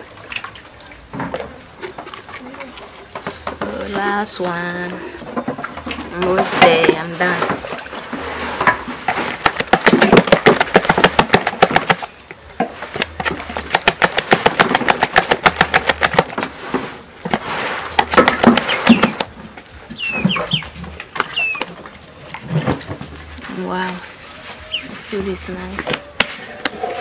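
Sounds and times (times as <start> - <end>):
rapid knocking in a bowl: 9.4 - 12.1, 13.1 - 16.4, 17.9 - 19.3.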